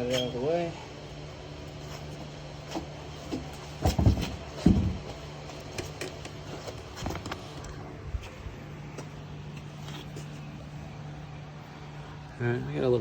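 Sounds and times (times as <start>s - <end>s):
steady low hum: 0.0s - 13.0s
dull thumps: 2.7s - 6.1s.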